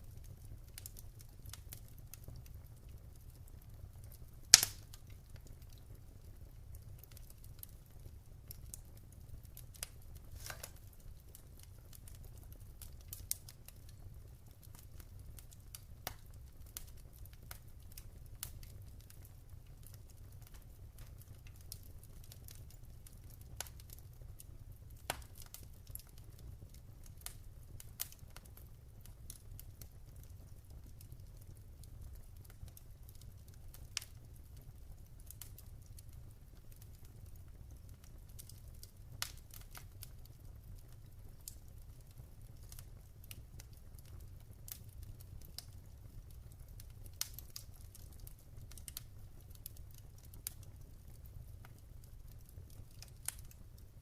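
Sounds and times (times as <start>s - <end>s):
wood fire crackling and popping: 0.0s - 54.0s.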